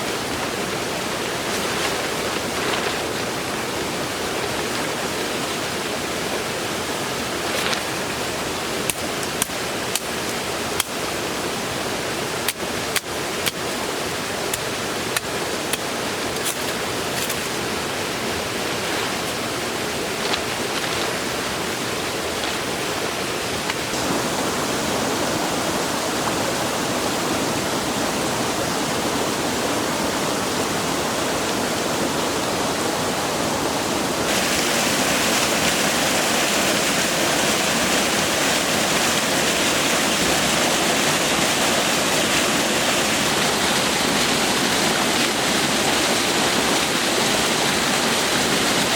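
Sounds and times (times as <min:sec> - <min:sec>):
steady rushing noise: 0:15.6 - 0:48.9.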